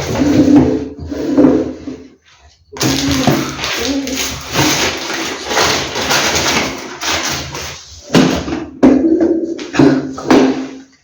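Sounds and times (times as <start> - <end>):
plastic packaging crinkling: 2.8 - 7.8.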